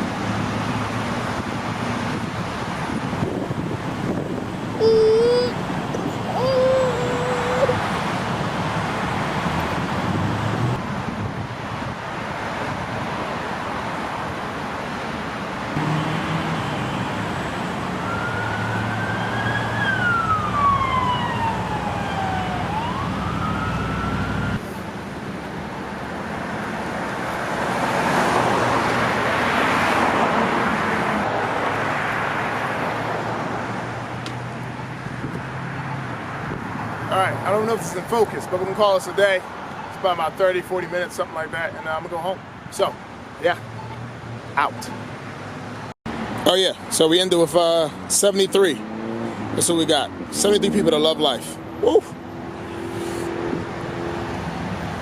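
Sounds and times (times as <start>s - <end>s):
vehicles passing: 0.0s - 55.0s
emergency vehicle siren: 6.2s - 7.9s, 15.8s - 24.7s.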